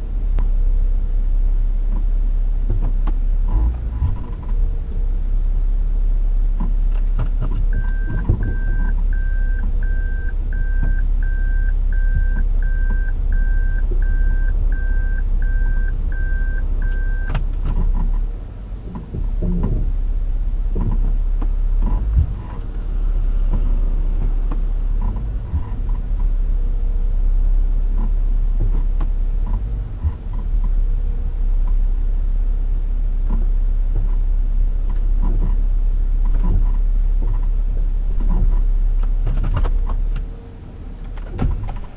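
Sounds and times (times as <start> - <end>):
car driving with low drone: 0.0 - 41.9
short beeps: 7.7 - 17.4.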